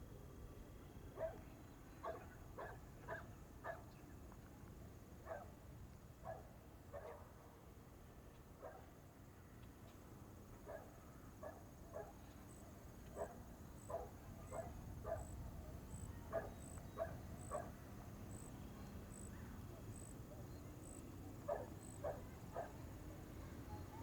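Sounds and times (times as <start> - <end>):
dog barking: 1.2 - 3.9, 5.3 - 5.5, 6.2 - 7.3, 8.6 - 8.9, 10.7 - 12.2, 13.2 - 15.3, 16.3 - 17.8, 21.5 - 22.8.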